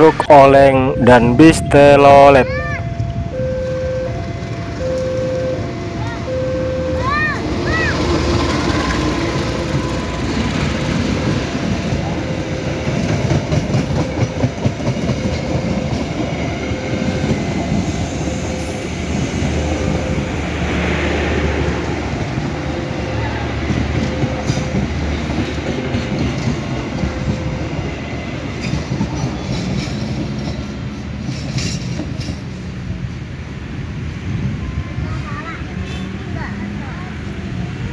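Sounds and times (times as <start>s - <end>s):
train rumbling on rails: 0.0s - 37.9s.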